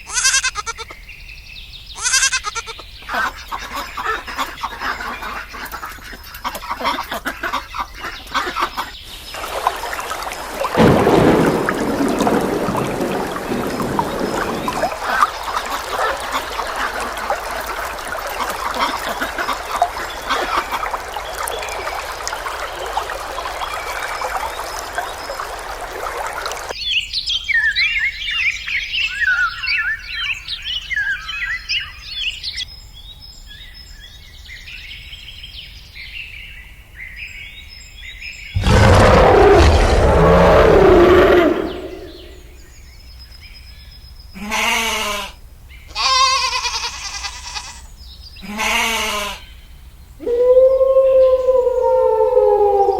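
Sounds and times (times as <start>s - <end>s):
small birds chirping: 0.0s - 10.4s
loud rough sound: 38.6s - 42.5s.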